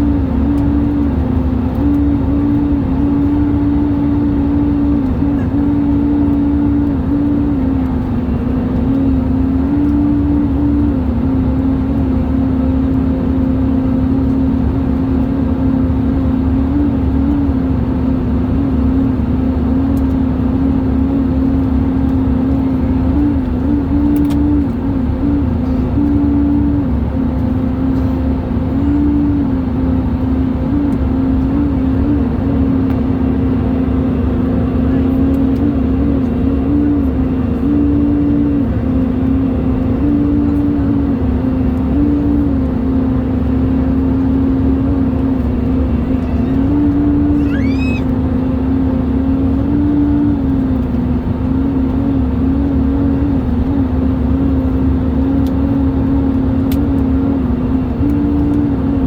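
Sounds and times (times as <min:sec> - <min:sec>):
aircraft cabin rumble: 0:00.0 - 0:59.0
wavering hum: 0:44.1 - 0:50.2.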